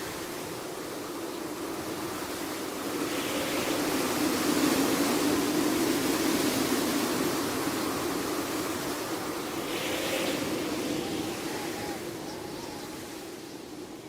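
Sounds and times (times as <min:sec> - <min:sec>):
wind howling: 0:00.0 - 0:14.0.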